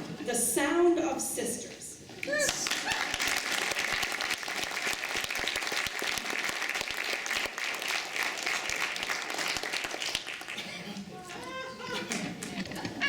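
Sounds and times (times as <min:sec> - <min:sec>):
audience applauding: 0:02.3 - 0:13.0.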